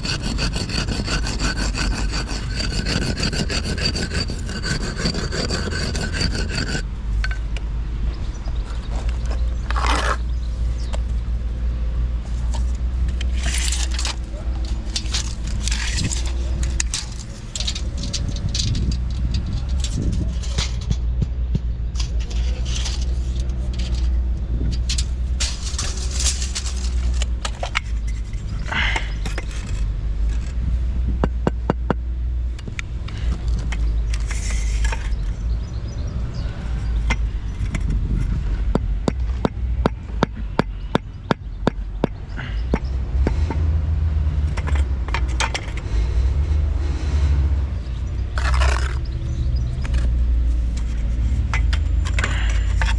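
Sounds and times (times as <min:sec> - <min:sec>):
low machine rumble: 0:00.0 - 0:45.1
clicks and rattles: 0:12.5 - 0:28.4.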